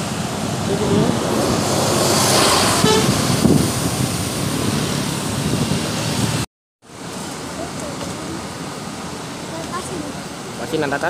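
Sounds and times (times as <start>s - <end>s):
bus passing with road noise: 0.0s - 11.0s
musical bus horn toot: 2.7s - 3.3s.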